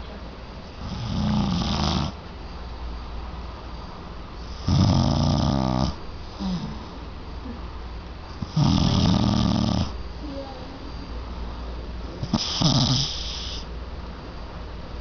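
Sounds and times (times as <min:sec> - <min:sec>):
person snoring: 0:04.6 - 0:06.8, 0:08.5 - 0:09.9, 0:12.3 - 0:13.7.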